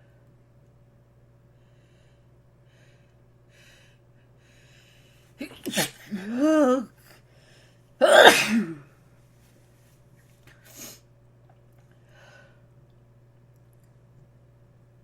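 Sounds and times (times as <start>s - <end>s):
person sneezing: 5.4s - 7.1s, 8.0s - 8.9s.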